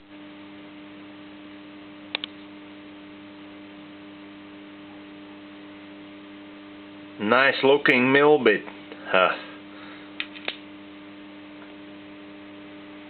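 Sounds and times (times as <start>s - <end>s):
electrical hum: 0.0s - 13.0s
sharp clicks: 2.1s - 2.5s.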